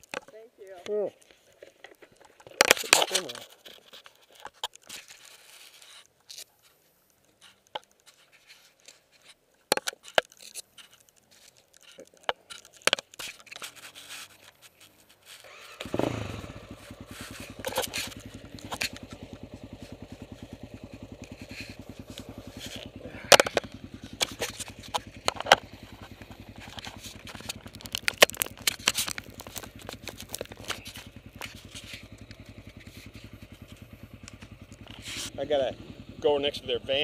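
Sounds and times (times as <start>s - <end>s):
motorbike engine idling: 12.4s - 37.0s
sharp clicks and knocks: 16.8s - 35.4s.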